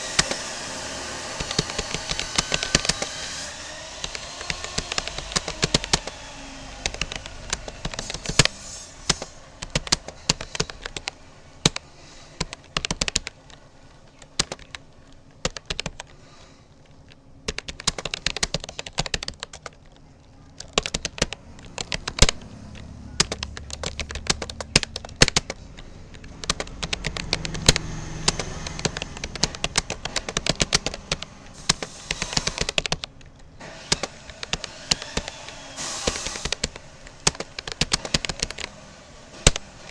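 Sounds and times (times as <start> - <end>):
keyboard key clicks: 0.0 - 39.9.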